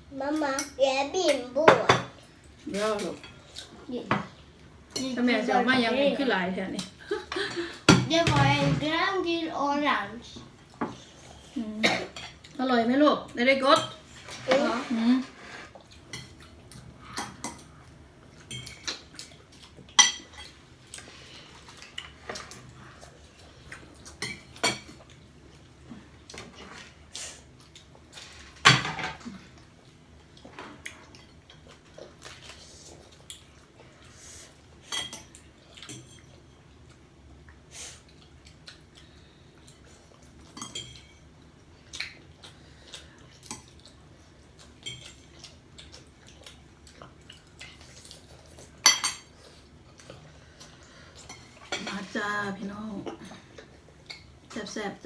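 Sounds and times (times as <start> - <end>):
cutlery clinking on plates: 48.8 - 49.4.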